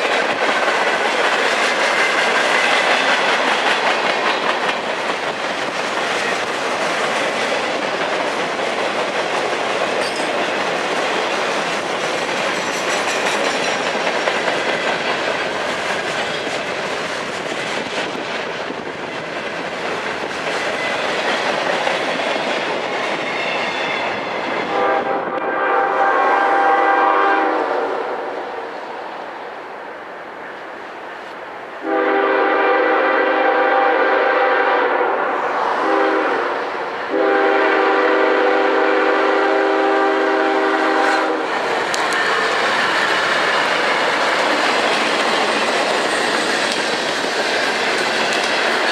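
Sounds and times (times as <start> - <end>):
train wheels clacking on rails: 0.0 - 25.4, 35.8 - 48.9
locomotive air horn: 24.7 - 28.4, 31.8 - 41.5.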